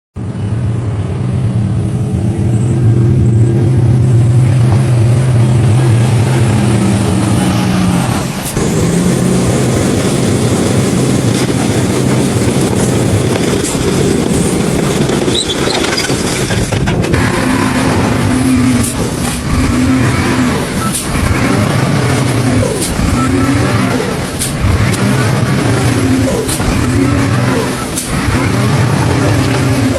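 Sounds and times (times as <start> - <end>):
construction machinery engines droning: 0.2 - 29.9.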